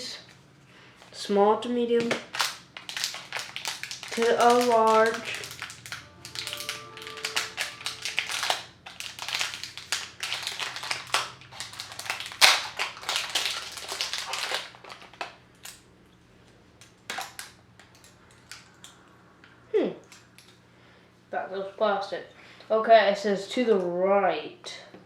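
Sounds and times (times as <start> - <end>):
plastic packaging crinkling: 2.0 - 15.8.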